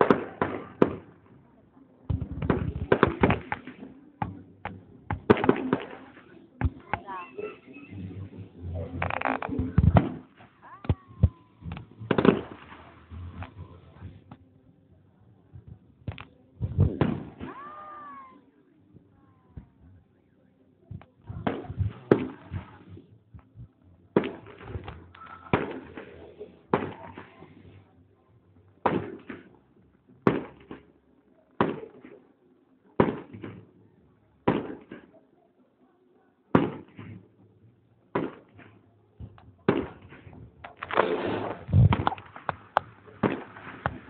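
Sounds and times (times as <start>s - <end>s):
fireworks bangs echoing: 0.0s - 1.4s, 2.1s - 7.1s, 9.2s - 14.1s, 16.6s - 17.8s, 34.5s - 35.1s, 36.5s - 37.2s, 39.7s - 44.0s.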